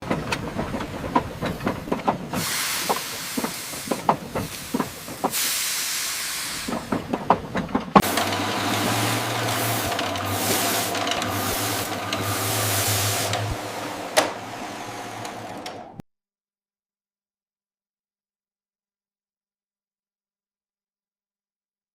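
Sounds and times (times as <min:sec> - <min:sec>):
clicks and clatter: 0:00.0 - 0:05.4
machinery hissing: 0:02.3 - 0:07.1, 0:08.0 - 0:16.0
motor hum: 0:08.0 - 0:16.0.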